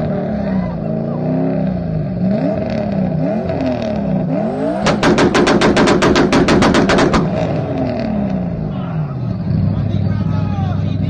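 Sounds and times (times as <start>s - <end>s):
car engine revving: 0.0s - 10.2s
rapid exhaust bangs: 4.5s - 8.7s.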